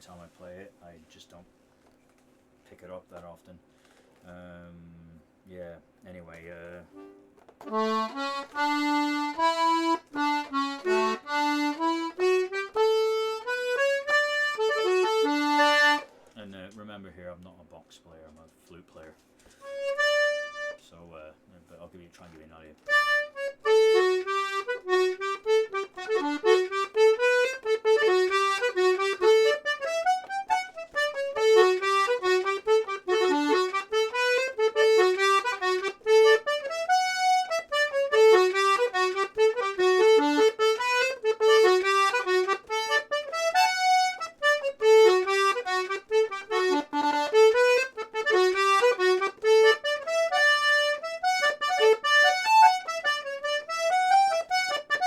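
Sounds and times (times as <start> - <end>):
accordion playing lively tune: 6.9 - 16.2, 19.6 - 20.8, 22.9 - 55.0.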